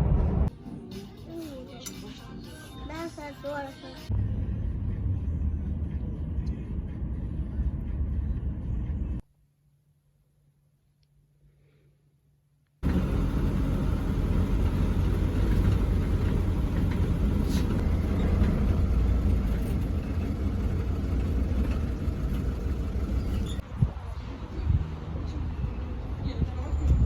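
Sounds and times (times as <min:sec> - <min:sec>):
road vehicle rumble: 0:00.0 - 0:00.5, 0:04.1 - 0:09.2, 0:12.8 - 0:27.0.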